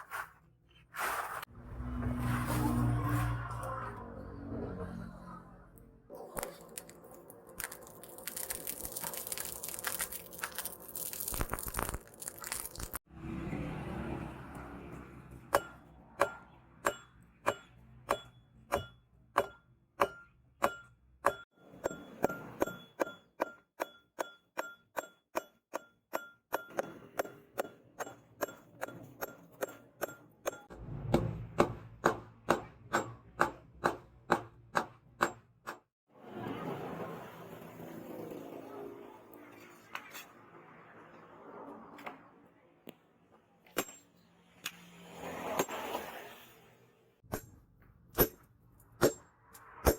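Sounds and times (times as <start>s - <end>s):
hammer striking steel on anvil: 15.5s - 35.8s, 47.3s - 49.9s.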